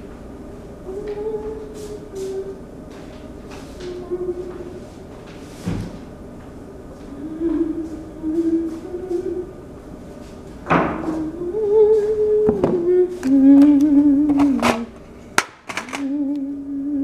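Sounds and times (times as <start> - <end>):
person humming: 0.8 - 2.6, 3.8 - 4.9, 7.1 - 9.6, 11.0 - 15.0, 15.8 - 17.0.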